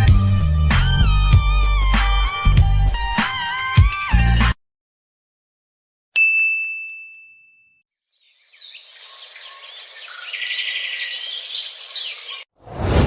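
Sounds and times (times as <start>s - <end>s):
bright bell ding: 6.2s - 7.8s
birds chirping: 8.1s - 12.5s.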